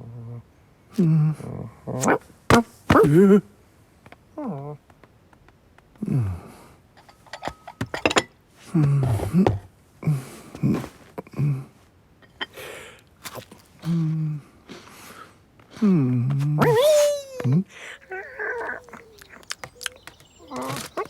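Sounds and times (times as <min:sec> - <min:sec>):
cartoon cat grunts and mews: 0:16.4 - 0:21.0.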